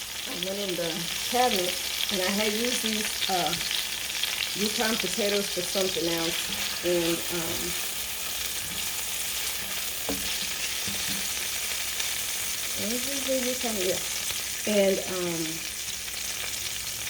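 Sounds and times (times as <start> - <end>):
vegetables sizzling in a pan: 0.0 - 17.0
person's voice: 0.3 - 3.6, 4.6 - 7.8, 12.8 - 14.0, 14.7 - 15.6.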